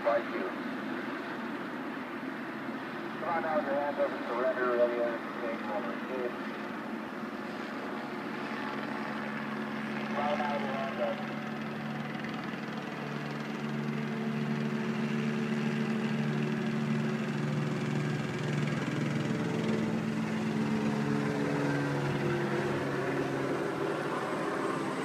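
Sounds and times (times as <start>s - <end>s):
helicopter droning overhead: 0.0s - 25.0s.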